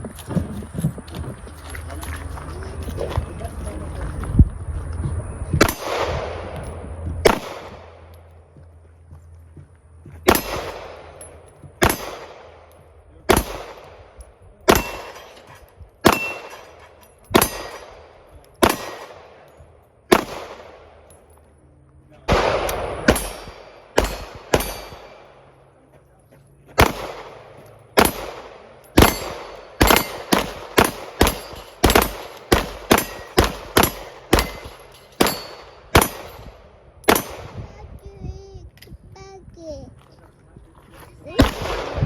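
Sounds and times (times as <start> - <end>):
pistol shots with echo: 5.6 - 8.4, 10.2 - 21.3, 22.2 - 25.8, 26.8 - 37.7, 41.3 - 42.0
steel targets ringing: 14.6 - 19.8, 22.3 - 25.6, 26.9 - 37.5.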